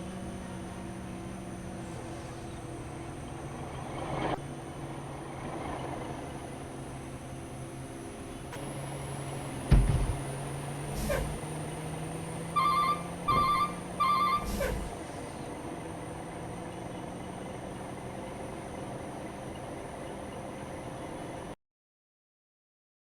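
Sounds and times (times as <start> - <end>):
low engine hum: 0.0 - 21.6
dull knocks: 9.7 - 10.4
bus horn beeps: 12.4 - 15.0.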